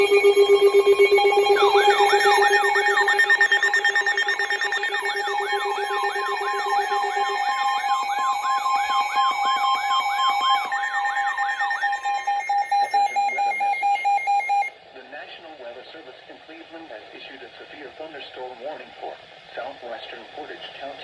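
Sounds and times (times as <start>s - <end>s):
steady beeping tones: 0.0s - 14.7s
sweeping siren tone: 0.0s - 14.7s.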